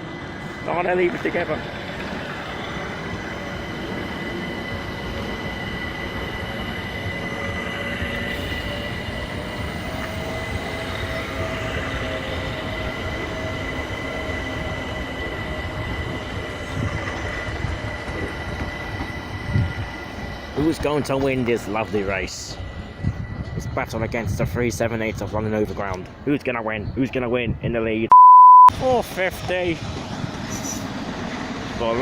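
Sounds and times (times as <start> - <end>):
wheels rumbling on rail: 0.0 - 26.3, 28.8 - 32.0
high steady tone: 28.1 - 28.7.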